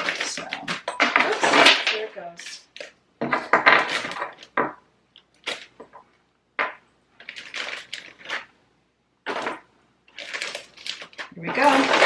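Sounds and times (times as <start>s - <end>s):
plastic bag rustling: 0.0s - 2.9s, 5.3s - 6.0s, 7.2s - 8.6s, 9.2s - 12.0s
frozen shrimp clinking: 7.2s - 8.5s, 9.3s - 12.0s.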